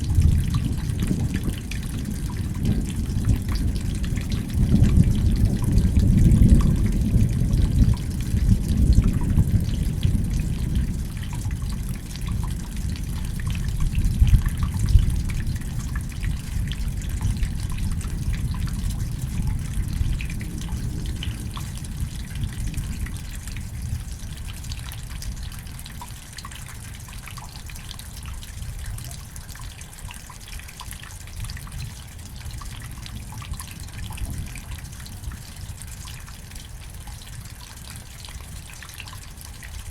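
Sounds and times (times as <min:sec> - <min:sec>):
low roll of thunder: 0:00.0 - 0:25.7, 0:32.5 - 0:36.0
close water drips: 0:00.0 - 0:39.9
rain falling: 0:00.0 - 0:39.9.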